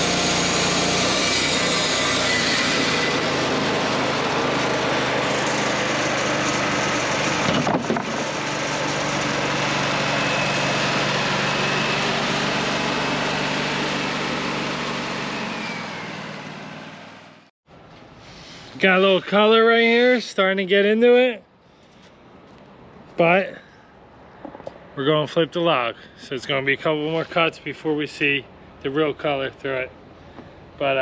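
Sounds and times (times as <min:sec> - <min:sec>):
band sawmill cutting log: 0:00.0 - 0:17.5.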